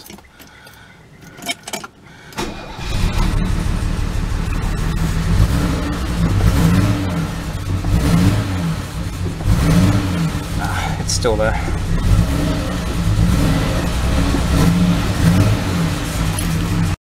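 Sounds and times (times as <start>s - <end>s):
engine starter cranking: 0.0s - 8.4s
engine running unevenly: 2.4s - 17.0s.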